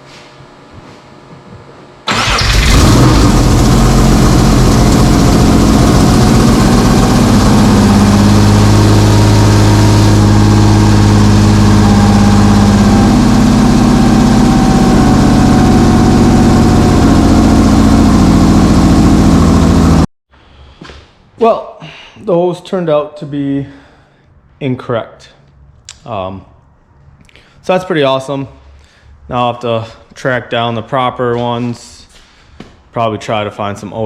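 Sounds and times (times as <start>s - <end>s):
car engine idling: 2.1s - 20.1s.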